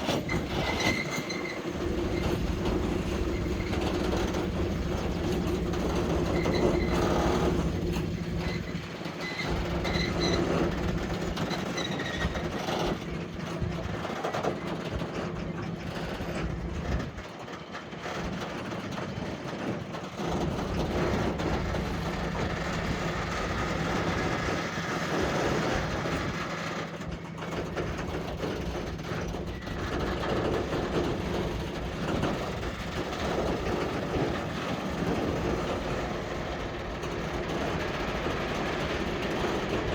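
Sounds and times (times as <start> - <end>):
short high-pitched squeaks: 0.0 - 10.8
diesel engine hum: 0.0 - 13.2, 20.2 - 39.9
wagon wheels clattering on track: 0.0 - 39.9.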